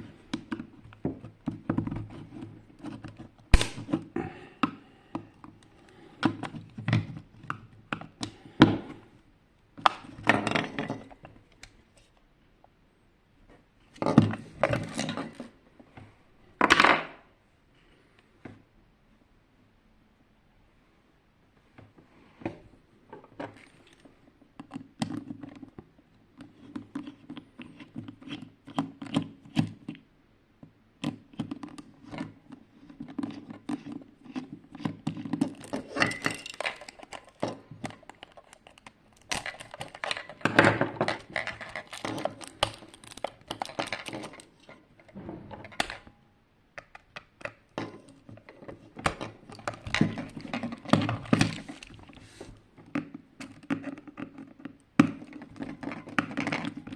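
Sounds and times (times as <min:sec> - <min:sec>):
plastic clock being taken apart: 0:31.2 - 0:46.0, 0:46.8 - 0:52.2.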